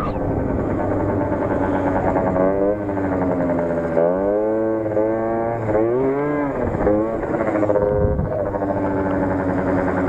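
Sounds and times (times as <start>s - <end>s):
scooter engine revving: 0.0s - 10.0s.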